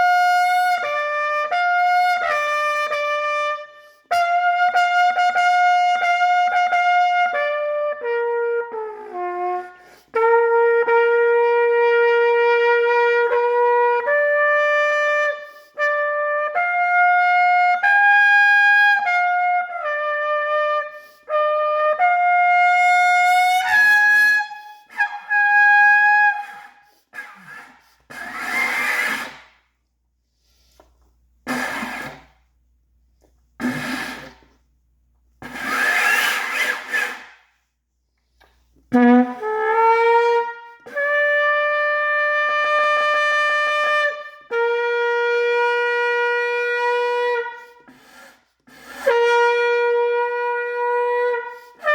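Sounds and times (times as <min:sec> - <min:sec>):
trumpet playing held notes: 0:00.0 - 0:26.7, 0:38.9 - 0:47.6, 0:49.0 - 0:51.9
harsh noisy trumpet blasts: 0:00.0 - 0:29.5, 0:31.4 - 0:32.4, 0:33.6 - 0:34.4, 0:35.4 - 0:37.4, 0:38.9 - 0:48.0, 0:48.7 - 0:51.9.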